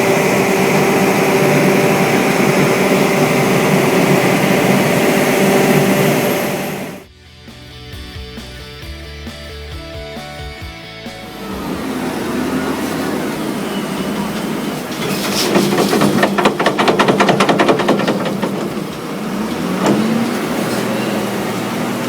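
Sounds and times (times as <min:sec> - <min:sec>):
heavy machinery engine hum: 0:00.0 - 0:07.1, 0:11.2 - 0:22.0
fast rattling clicks: 0:15.0 - 0:19.1.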